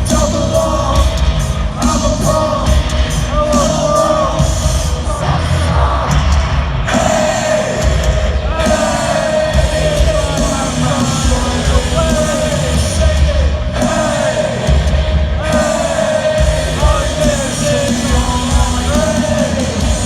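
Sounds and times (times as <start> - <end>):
amplified singing: 0.0 - 20.0
heavy bass: 0.0 - 20.0
live rock band playing: 0.0 - 20.0.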